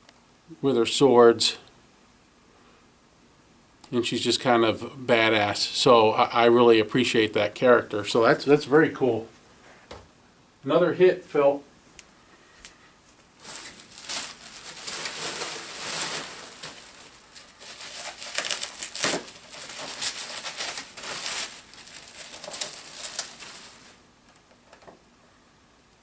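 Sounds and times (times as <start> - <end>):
packing material crinkling: 13.4 - 24.1.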